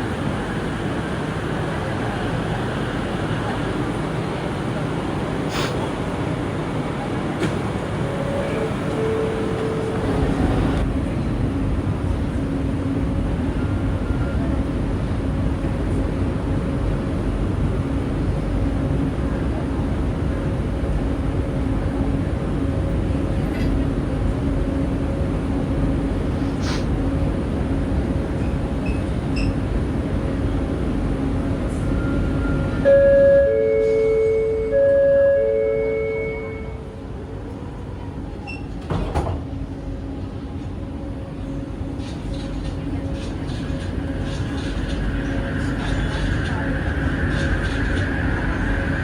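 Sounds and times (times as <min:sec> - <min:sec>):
train interior rumble: 0:00.0 - 0:49.0
low machinery hum: 0:07.6 - 0:49.0
sliding doors thud: 0:38.8 - 0:39.5.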